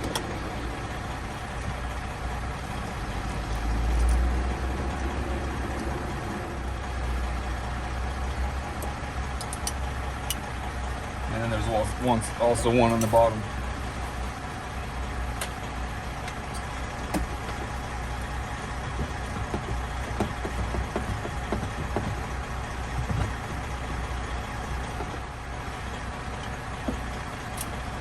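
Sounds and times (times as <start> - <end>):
truck engine idling: 0.0 - 28.0
hand tool clicks and knocks: 19.0 - 22.3.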